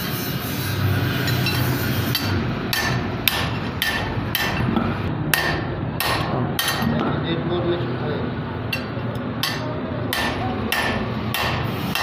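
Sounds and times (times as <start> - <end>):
workshop noise: 0.0 - 12.0
hammer striking steel rod: 1.3 - 4.7, 5.3 - 6.9, 8.7 - 12.0.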